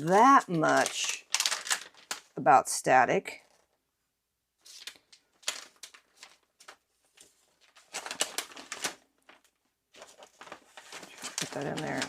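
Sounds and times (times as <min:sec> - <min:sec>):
packaging clicks taps and rustles: 0:00.0 - 0:02.4, 0:07.7 - 0:12.0.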